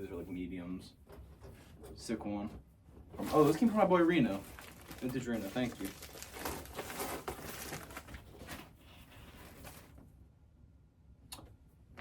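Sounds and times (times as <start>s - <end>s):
rustling of t-shirts being handled: 3.1s - 10.0s.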